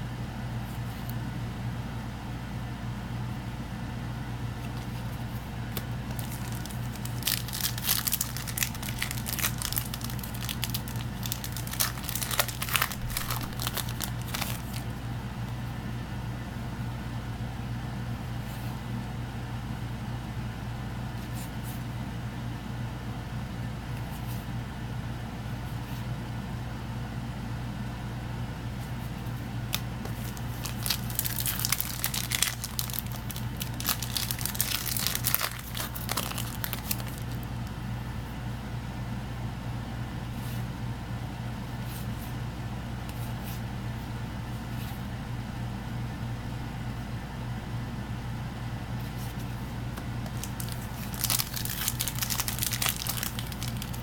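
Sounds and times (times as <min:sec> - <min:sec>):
foil wrappers crinkling and tearing: 0:05.7 - 0:15.0, 0:29.7 - 0:37.7, 0:50.2 - 0:54.0.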